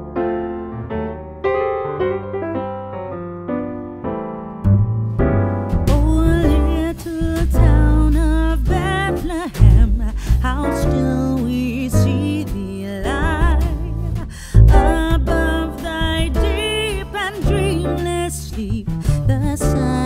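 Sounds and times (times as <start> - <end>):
sung melody: 0.0 - 18.2
electric piano chords: 0.0 - 18.7
heavy bass: 4.6 - 20.0.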